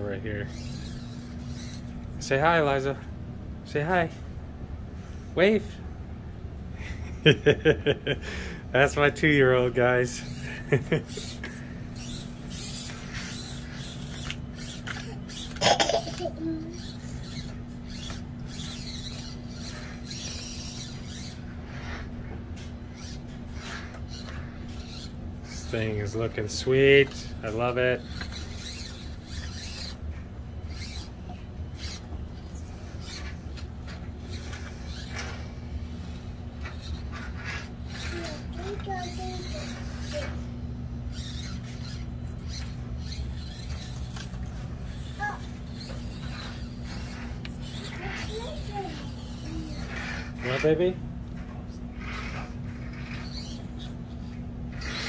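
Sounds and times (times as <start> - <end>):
toy truck motor whirring: 0.0 - 2.9, 8.8 - 55.0
steady low hum: 0.0 - 55.0.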